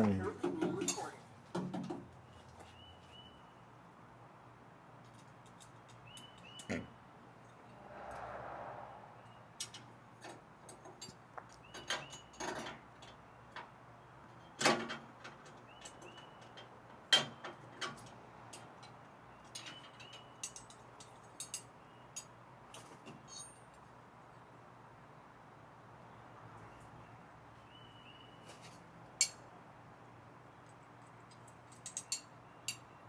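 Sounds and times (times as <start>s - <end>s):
clicks and knocks of parts and tools: 5.0s - 6.5s, 9.7s - 23.8s, 30.6s - 32.9s.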